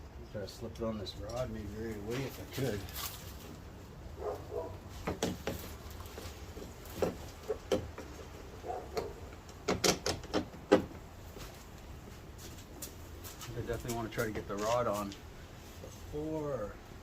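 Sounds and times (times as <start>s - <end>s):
clicks and knocks of door handle: 8.9s - 11.0s.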